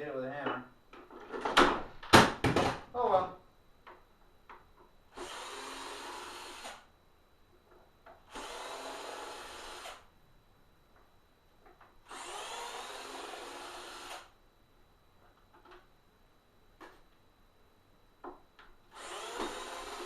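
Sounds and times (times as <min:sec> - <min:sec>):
electric drill running: 0:05.1 - 0:06.9, 0:08.3 - 0:10.1, 0:12.1 - 0:14.3, 0:18.9 - 0:20.0.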